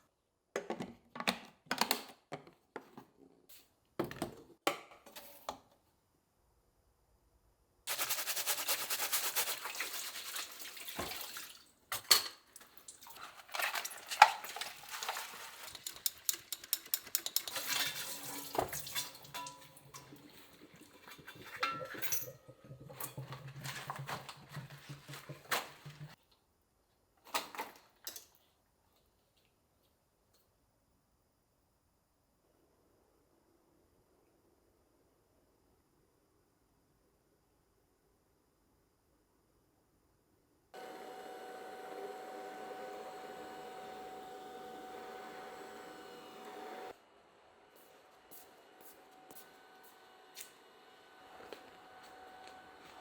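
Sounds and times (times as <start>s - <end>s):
dishes and utensils clinking: 13.2s - 26.1s.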